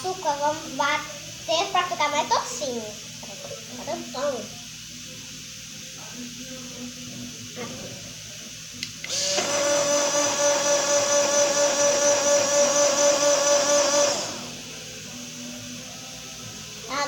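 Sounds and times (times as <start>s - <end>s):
blender switch click: 8.8s - 9.6s
blender motor whining: 9.0s - 14.7s.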